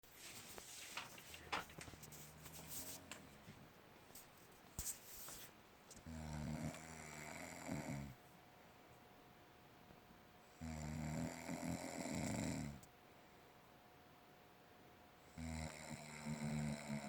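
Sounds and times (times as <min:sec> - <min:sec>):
person snoring: 0:06.0 - 0:08.2, 0:10.5 - 0:12.8, 0:15.3 - 0:17.0.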